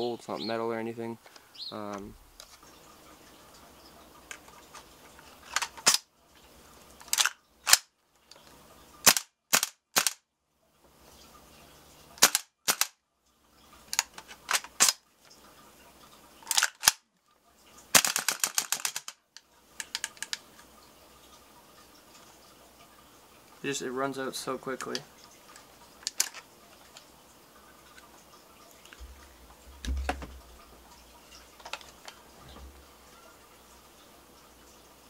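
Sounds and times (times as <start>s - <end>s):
airsoft rifle firing: 9.0s - 10.2s, 12.2s - 13.0s, 18.0s - 19.1s.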